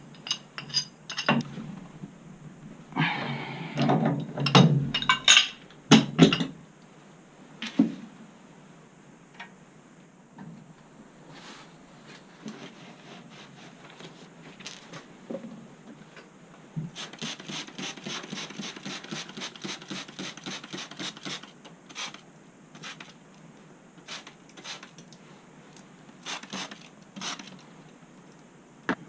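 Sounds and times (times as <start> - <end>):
rapid rubbing strokes: 16.9 - 22.2, 26.2 - 27.6.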